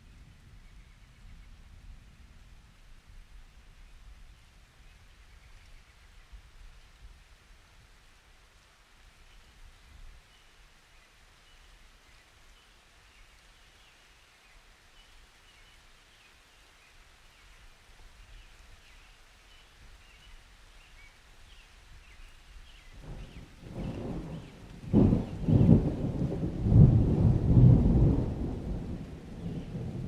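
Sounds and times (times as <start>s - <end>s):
light rain hissing: 0.0s - 30.0s
low thunder rumble: 23.0s - 30.0s.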